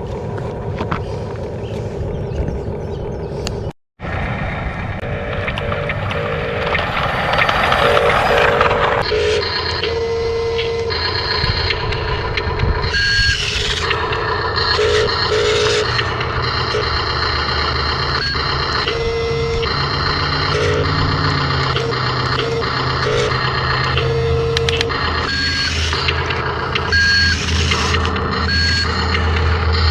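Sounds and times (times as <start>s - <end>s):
electronic beep: 5.0s - 11.8s, 12.8s - 14.0s, 14.6s - 29.9s
small electric motors whining: 5.0s - 29.9s.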